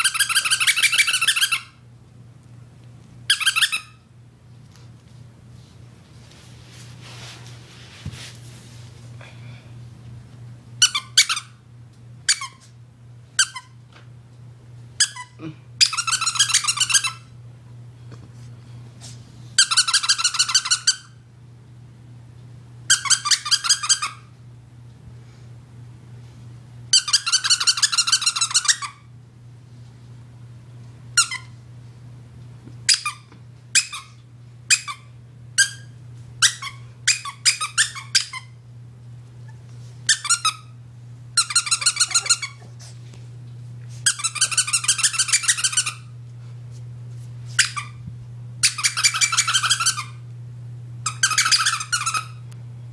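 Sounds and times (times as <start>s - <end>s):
squeaky dog toy squeaks: 0.0s - 1.8s, 3.3s - 4.0s, 10.8s - 11.6s, 12.2s - 12.7s, 13.4s - 13.8s, 15.0s - 17.3s, 19.6s - 21.2s, 22.9s - 24.2s, 26.9s - 29.0s, 31.2s - 31.5s, 32.9s - 33.2s, 33.8s - 38.6s, 40.1s - 40.7s, 41.4s - 42.6s, 44.1s - 46.1s, 47.6s - 48.0s, 48.6s - 50.2s, 51.1s - 52.4s.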